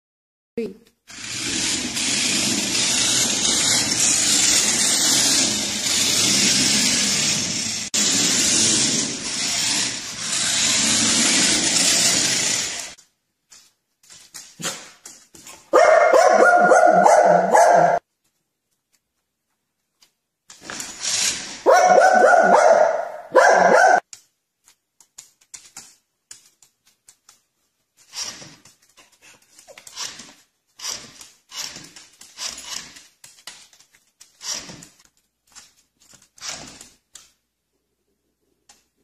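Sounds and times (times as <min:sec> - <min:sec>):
dog barking: 0:15.7 - 0:18.0, 0:21.6 - 0:24.0.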